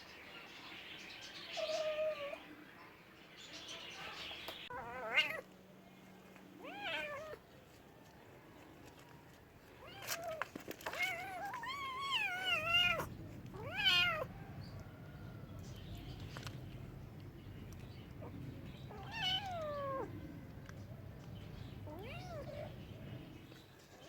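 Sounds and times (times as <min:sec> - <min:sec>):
cat meowing: 0:01.6 - 0:02.4, 0:04.7 - 0:05.4, 0:06.6 - 0:07.4, 0:09.8 - 0:14.3, 0:18.9 - 0:20.2, 0:21.8 - 0:22.8.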